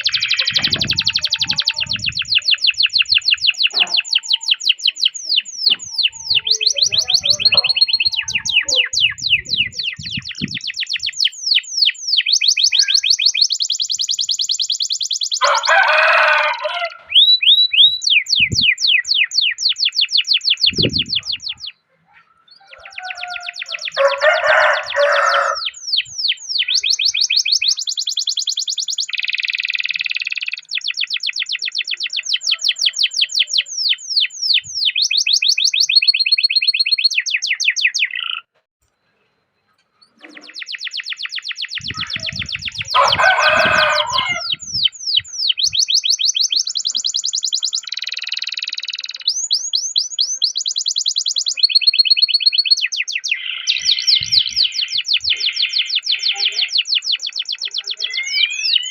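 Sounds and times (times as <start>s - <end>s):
canary buzzy phrases: 0.0s - 2.7s, 3.4s - 10.6s, 20.7s - 25.7s, 41.8s - 44.8s
canary singing trills: 0.0s - 38.6s, 39.9s - 58.9s.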